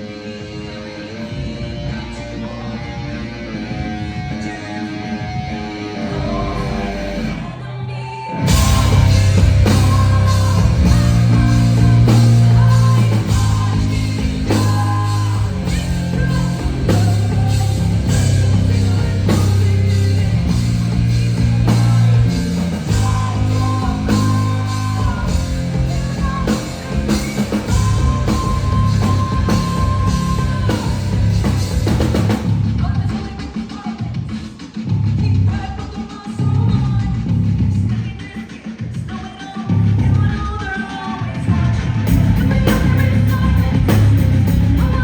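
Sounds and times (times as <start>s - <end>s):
live rock band playing: 0.0s - 7.7s, 8.3s - 35.4s, 39.6s - 45.0s
person singing: 0.0s - 45.0s.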